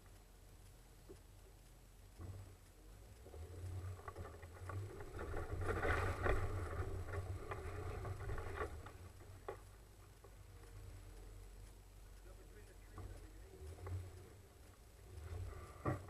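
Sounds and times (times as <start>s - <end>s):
off-road vehicle rumbling: 2.2s - 16.0s.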